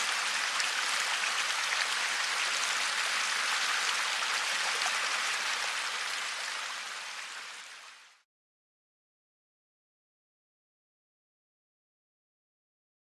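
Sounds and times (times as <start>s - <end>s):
running water rushing: 0.0s - 8.2s.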